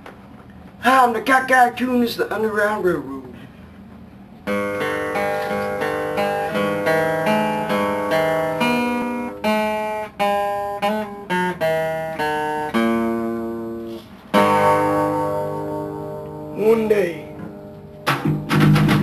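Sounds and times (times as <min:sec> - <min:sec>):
acoustic guitar strumming chords: 0:04.4 - 0:19.0.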